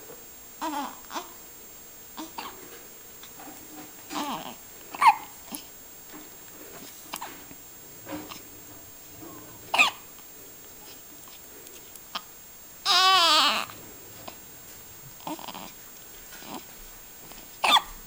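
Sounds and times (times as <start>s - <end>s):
baby hiccuping: 2.2s - 2.5s, 4.1s - 5.6s, 9.3s - 10.0s, 17.6s - 17.9s.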